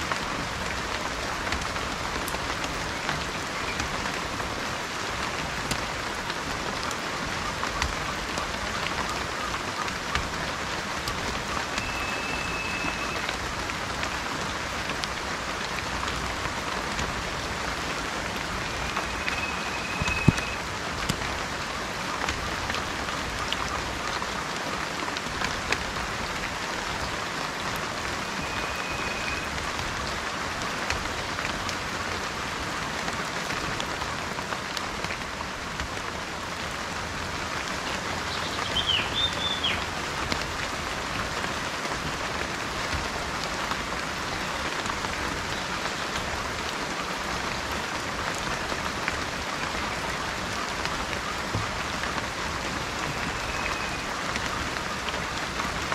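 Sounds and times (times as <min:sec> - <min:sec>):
steady rain falling: 0:00.0 - 0:55.9
bird whistling: 0:11.8 - 0:13.2, 0:18.7 - 0:20.6, 0:28.4 - 0:29.5, 0:38.4 - 0:39.8.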